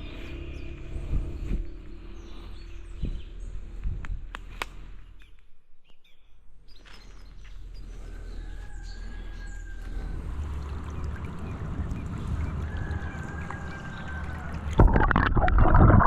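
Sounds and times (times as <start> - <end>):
steady low rumble: 0.0 - 5.2
small birds chirping: 0.0 - 14.8.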